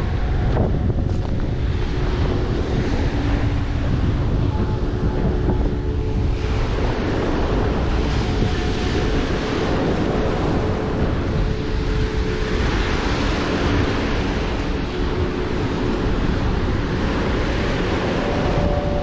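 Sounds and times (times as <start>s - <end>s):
faint hum: 0.0s - 19.0s
sea surf washing: 0.0s - 19.0s
wind buffeting microphone: 0.0s - 19.0s.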